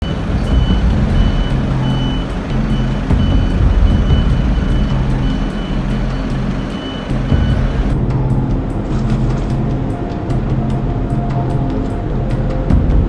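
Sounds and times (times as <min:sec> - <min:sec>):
electronic warning beeper: 0:00.0 - 0:07.9
heavy machinery rumble: 0:00.0 - 0:10.0.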